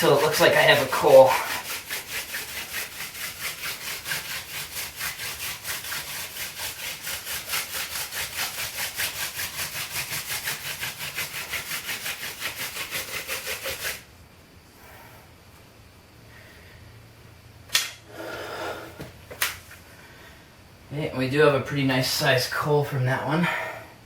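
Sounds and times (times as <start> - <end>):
hand drill rasping friction: 0.0 - 14.0.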